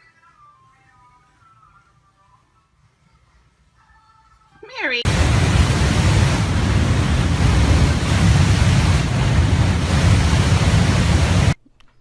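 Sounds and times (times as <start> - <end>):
loud rushing noise: 5.1 - 11.6.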